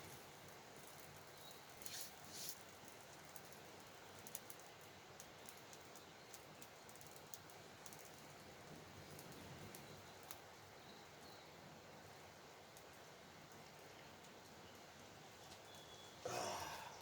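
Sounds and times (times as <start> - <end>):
campfire crackling and popping: 0.0 - 17.0.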